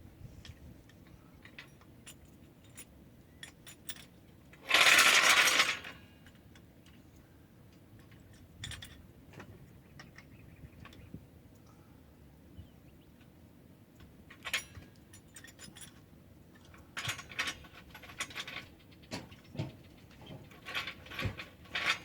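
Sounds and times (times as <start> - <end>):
metal tools clinking: 14.3 - 22.0.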